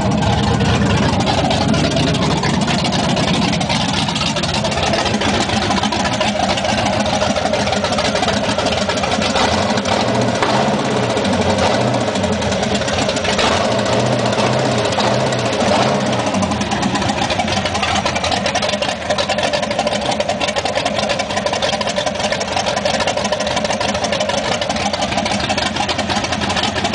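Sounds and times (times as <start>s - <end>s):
engine idling: 0.0s - 26.9s
light engine ticking: 0.0s - 26.9s.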